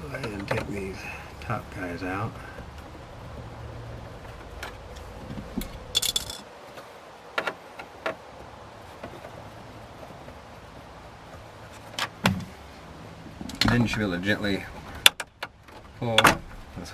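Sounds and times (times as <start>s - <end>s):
metallic jingle: 5.9s - 6.4s.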